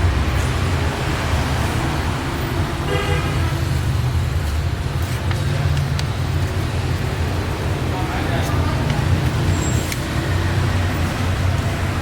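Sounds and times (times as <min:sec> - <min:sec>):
road traffic rumble: 0:00.0 - 0:12.0
car horn toot: 0:02.9 - 0:03.4.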